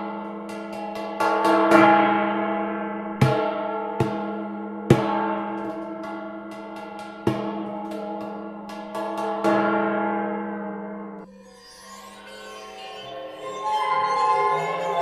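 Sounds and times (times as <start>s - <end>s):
waterphone rods struck: 0.0s - 9.9s.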